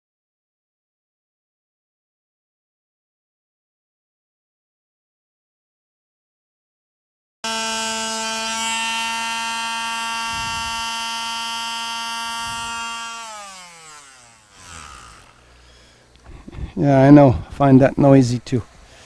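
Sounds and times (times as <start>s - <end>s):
belt sander whining: 7.4s - 16.2s.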